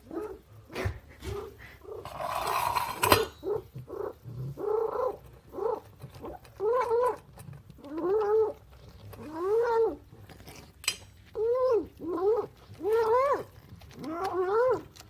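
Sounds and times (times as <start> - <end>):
cat crying while eating: 11.4 - 15.0.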